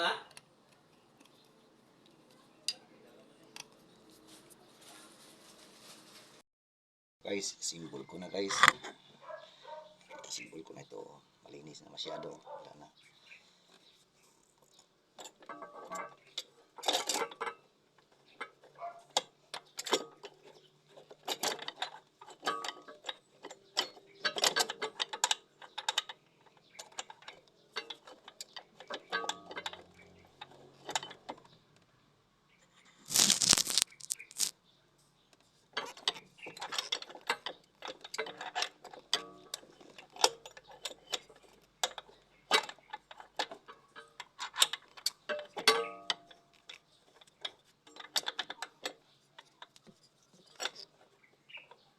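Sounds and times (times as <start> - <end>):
metal tools clicking and clanking: 14.7 - 31.6, 35.7 - 51.9.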